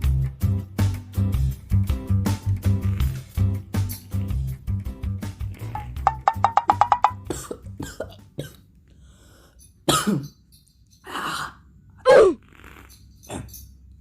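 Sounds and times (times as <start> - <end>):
person coughing harshly: 7.3 - 8.6, 9.9 - 10.3.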